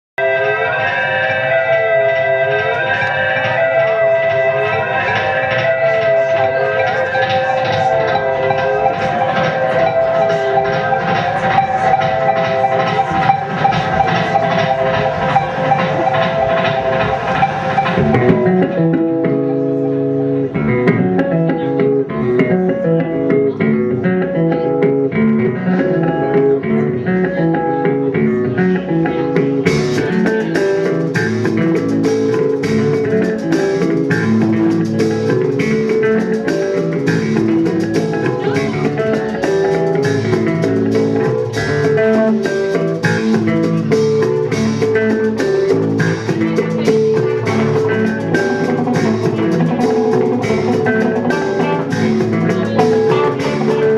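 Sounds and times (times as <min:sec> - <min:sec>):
bass guitar: 0:00.0 - 0:53.9
electric guitar: 0:00.2 - 0:53.9
drum kit with cymbals: 0:03.4 - 0:18.9, 0:29.4 - 0:53.9.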